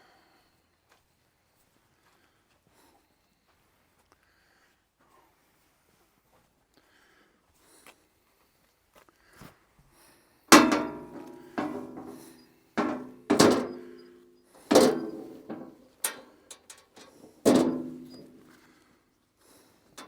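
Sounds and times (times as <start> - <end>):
metallic clanks of steel parts: 10.5 - 18.6.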